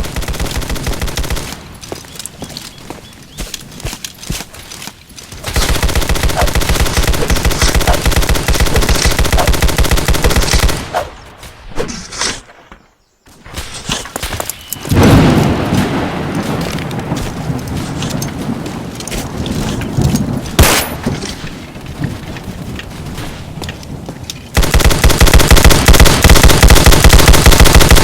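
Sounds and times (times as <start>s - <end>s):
rapid automatic gunfire: 0.0s - 1.6s, 5.5s - 10.8s, 24.6s - 28.0s
gunshots: 5.4s - 11.2s, 24.6s - 28.0s.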